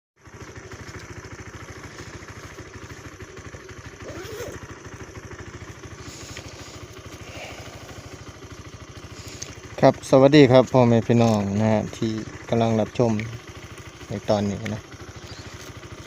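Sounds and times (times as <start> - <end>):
motorcycle engine idling: 0.2 - 16.0.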